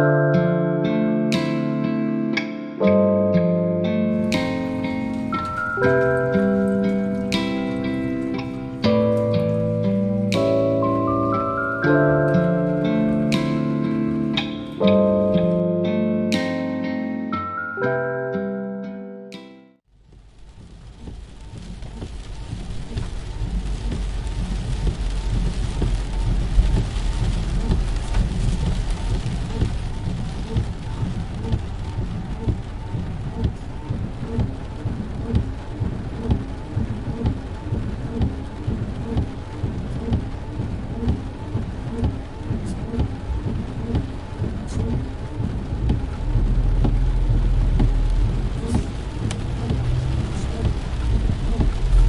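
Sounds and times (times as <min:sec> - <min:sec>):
rain on hard surface: 0:04.1 - 0:15.6, 0:19.9 - 0:52.0
low rumble: 0:19.9 - 0:52.0.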